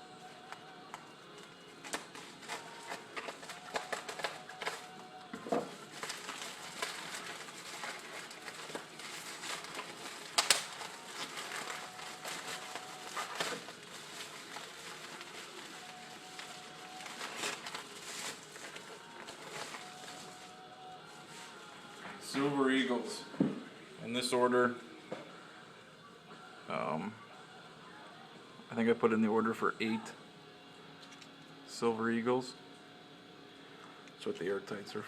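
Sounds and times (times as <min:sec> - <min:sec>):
packaging crinkling and rustling: 0:00.4 - 0:23.0
packaging snapping: 0:01.8 - 0:05.0, 0:05.9 - 0:20.4.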